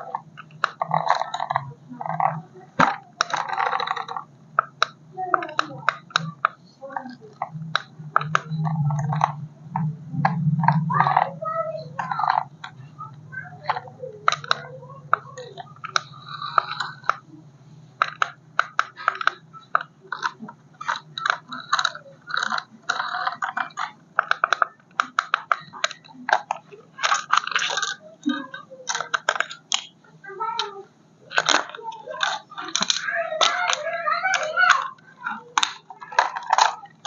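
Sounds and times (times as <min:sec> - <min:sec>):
toy parts clicking and rattling: 0:00.0 - 0:17.2, 0:18.0 - 0:37.0
steady low hum: 0:00.0 - 0:37.0
plastic packaging crinkling: 0:18.0 - 0:30.7, 0:31.3 - 0:37.0.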